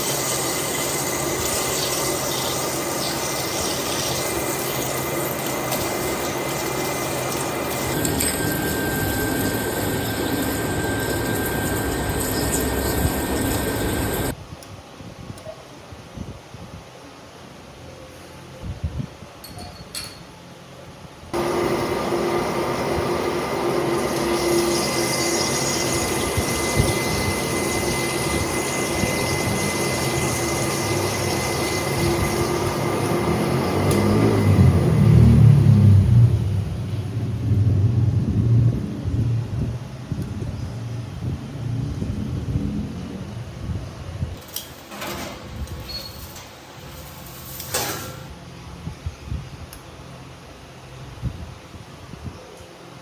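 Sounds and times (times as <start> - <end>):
metal lathe cutting: 0.0 - 14.3, 21.4 - 35.9
thin steady whine: 0.0 - 14.4, 21.3 - 37.8
low rumble: 34.4 - 44.4.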